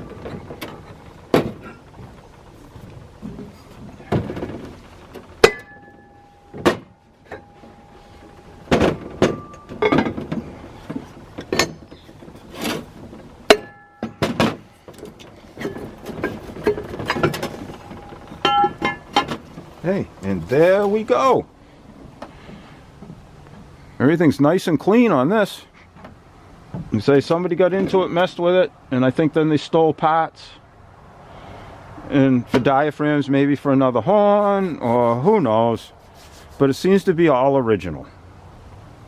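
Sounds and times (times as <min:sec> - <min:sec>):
metal horn parts ringing: 0:05.4 - 0:19.5
rubber hammer knocking metal horn: 0:13.5 - 0:14.6, 0:18.4 - 0:19.3.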